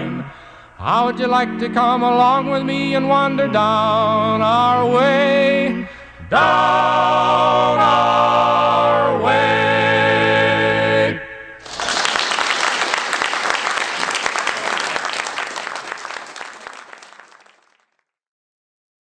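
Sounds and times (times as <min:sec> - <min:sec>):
male chorus singing chord: 0:00.0 - 0:11.6
audience applauding: 0:11.6 - 0:17.9.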